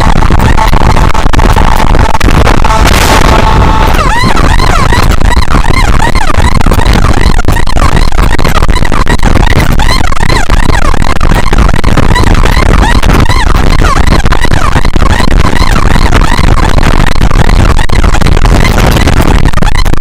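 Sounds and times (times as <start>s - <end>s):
wind and engine rumble: 0.0s - 8.6s
electronic siren warbling: 0.0s - 20.0s.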